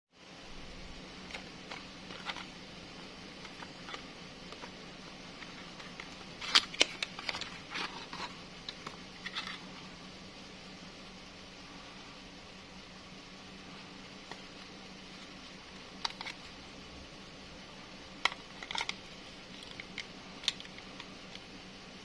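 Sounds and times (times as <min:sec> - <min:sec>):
faint hiss: 0:00.2 - 0:22.0
low hum: 0:00.2 - 0:22.0.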